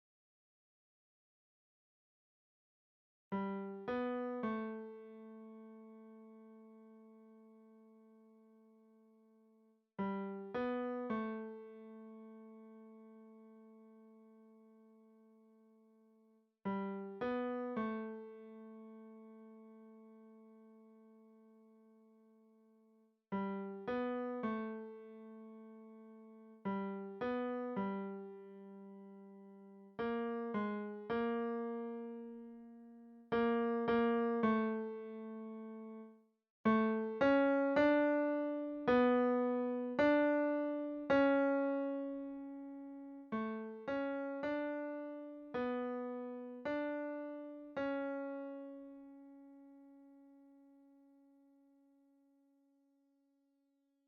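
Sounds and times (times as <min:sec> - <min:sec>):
piano melody: 0:33.3 - 0:36.1, 0:36.7 - 0:49.1.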